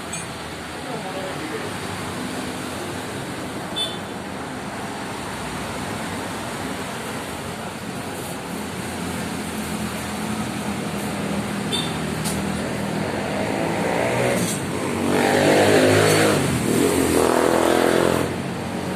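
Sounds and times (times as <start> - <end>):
road traffic noise: 0.0 - 18.9.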